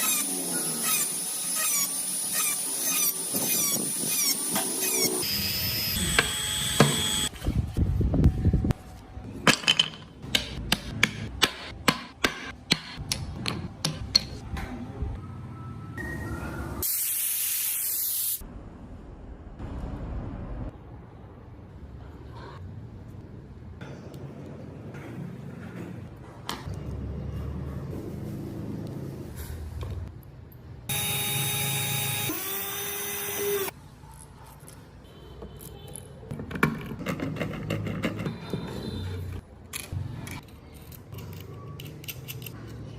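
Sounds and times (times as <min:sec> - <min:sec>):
electric power tool whining: 0:03.4 - 0:07.3, 0:30.9 - 0:33.7.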